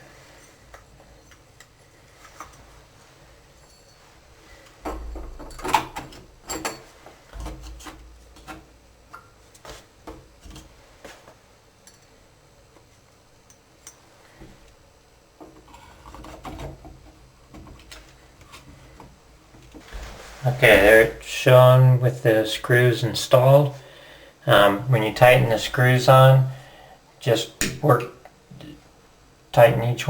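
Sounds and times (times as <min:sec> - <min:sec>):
low rumbling handling noise: 0:19.5 - 0:21.3.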